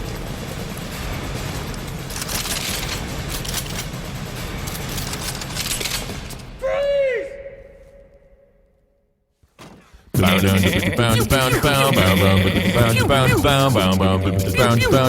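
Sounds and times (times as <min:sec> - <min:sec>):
vocal gunfire imitation: 0:10.2 - 0:15.0.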